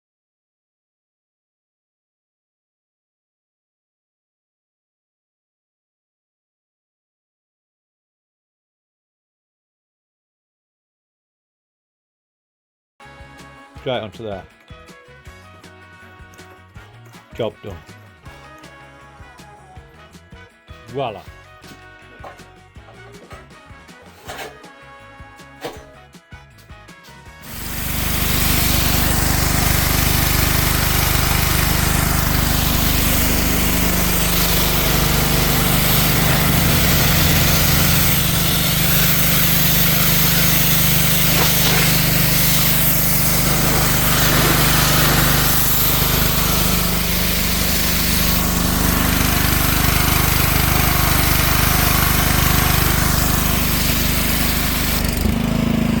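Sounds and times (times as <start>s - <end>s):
high-pressure water jet hissing: 25.5s - 26.0s, 27.4s - 55.4s
small petrol engine running: 27.4s - 56.0s.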